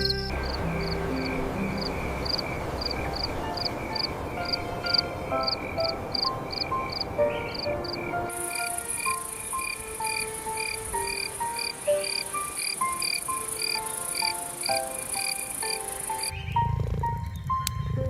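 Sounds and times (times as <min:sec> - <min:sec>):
high insect drone: 0:00.0 - 0:16.4
rhythmic frog chirps: 0:00.0 - 0:18.0.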